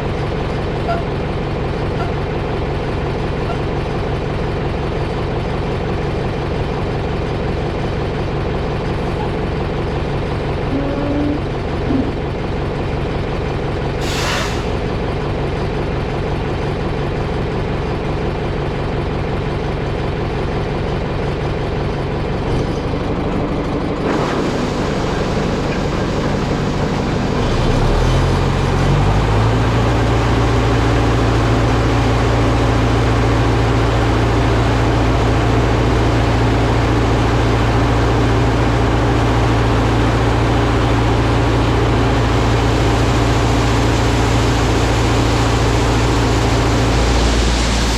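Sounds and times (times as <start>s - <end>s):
heavy vehicle engine running: 0.0s - 47.9s
brief hiss: 14.0s - 14.8s.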